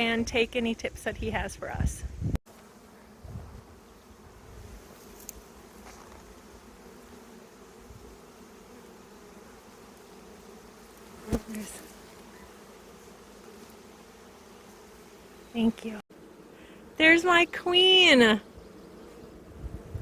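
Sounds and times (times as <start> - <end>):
bees buzzing: 0.0 - 20.0.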